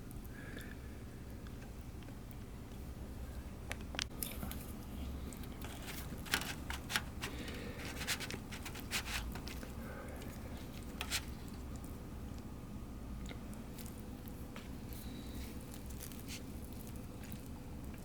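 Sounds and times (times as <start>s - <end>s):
low steady hum: 0.0s - 18.0s
plastic packaging rustling: 5.4s - 9.8s.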